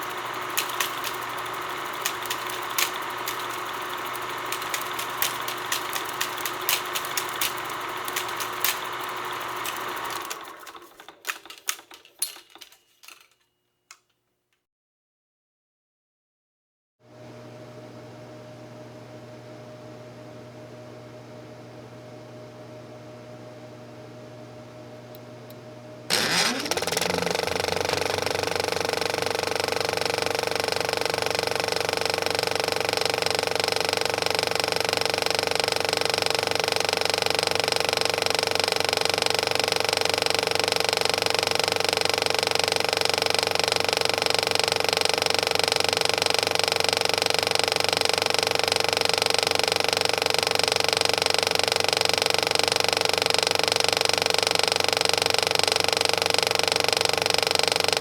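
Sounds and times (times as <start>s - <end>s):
projector hum: 0.0s - 13.3s, 17.1s - 42.6s
projector motor whining: 0.0s - 13.3s, 17.2s - 58.0s.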